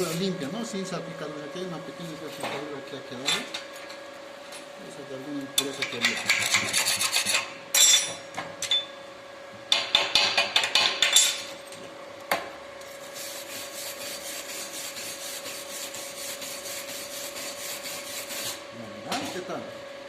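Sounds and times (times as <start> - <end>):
steady hum: 0.0 - 20.0
wire brush scrubbing steel: 12.9 - 18.7.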